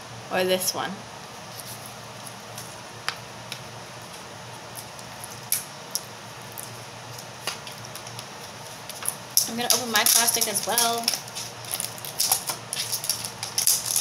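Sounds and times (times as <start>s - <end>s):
faint room hum: 0.0s - 14.0s
plastic packaging clicks and crinkles: 4.8s - 14.0s.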